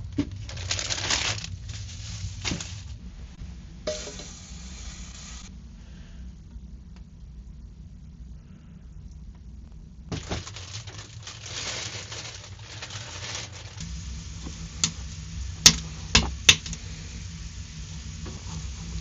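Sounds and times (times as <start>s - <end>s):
food sizzling in a pan: 3.9s - 5.5s, 12.9s - 19.0s.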